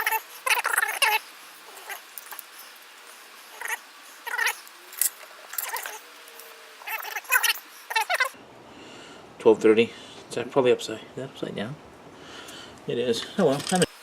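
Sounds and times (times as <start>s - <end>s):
animal high-pitched cries: 0.0s - 2.7s, 3.4s - 8.4s.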